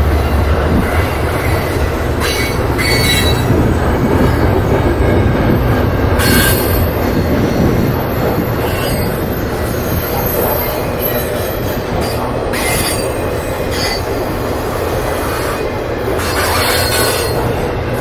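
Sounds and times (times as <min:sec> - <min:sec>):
train wheels rumbling on rail: 0:00.0 - 0:18.0
wheel squeals: 0:02.2 - 0:03.5, 0:16.2 - 0:18.0.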